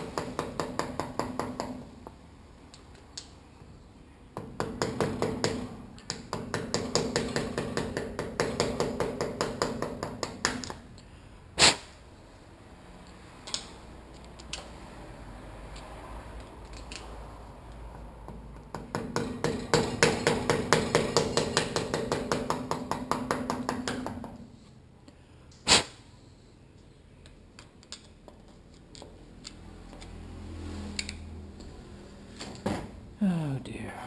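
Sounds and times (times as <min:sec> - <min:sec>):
rapid metal-on-metal taps: 0:04.4 - 0:10.8, 0:18.3 - 0:24.4.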